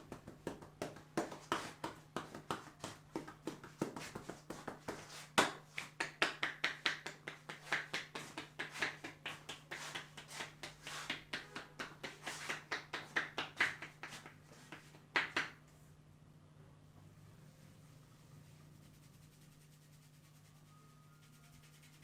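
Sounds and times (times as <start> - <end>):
hands tapping and slapping head: 0.0 - 15.6.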